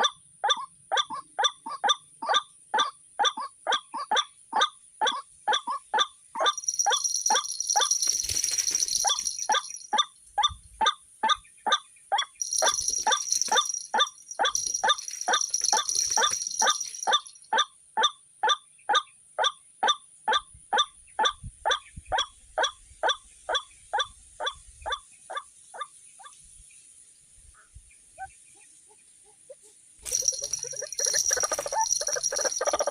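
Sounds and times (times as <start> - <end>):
waterhen kwak calls: 0.0 - 8.1, 29.2 - 32.9.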